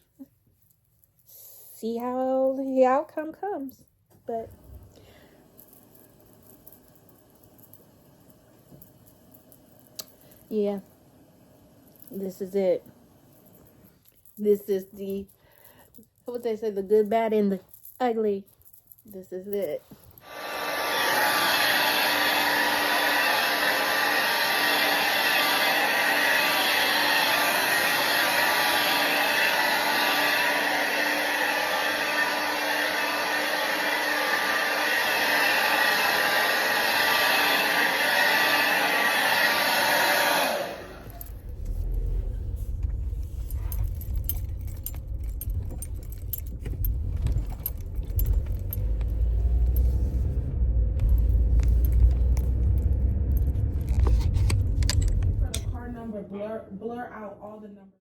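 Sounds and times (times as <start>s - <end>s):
hair dryer blowing: 20.2s - 43.1s, 43.8s - 55.7s
low rumble: 40.8s - 56.1s
clicks and rattles: 42.7s - 50.0s.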